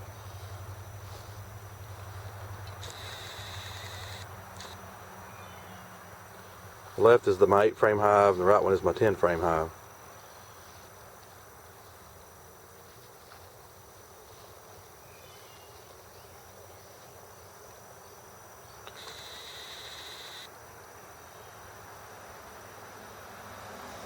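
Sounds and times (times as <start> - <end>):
honeybees humming: 0.0 - 10.8, 15.1 - 20.5.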